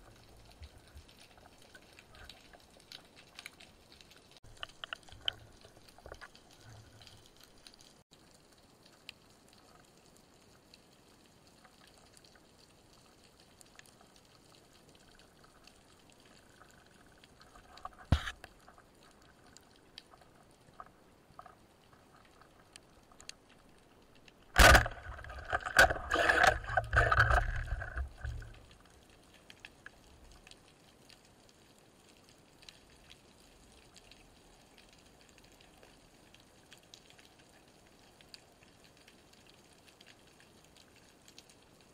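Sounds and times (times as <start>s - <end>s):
bubbling rattling noise: 24.6s - 28.7s.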